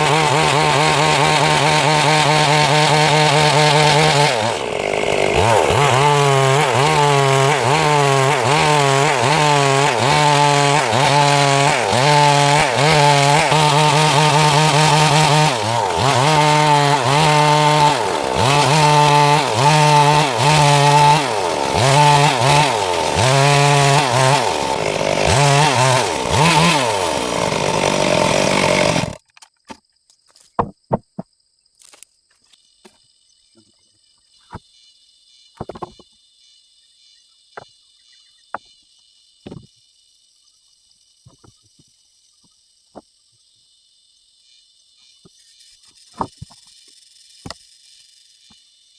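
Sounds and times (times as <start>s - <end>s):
chainsaw cutting wood: 0.0s - 29.7s, 39.4s - 39.7s, 45.1s - 48.8s.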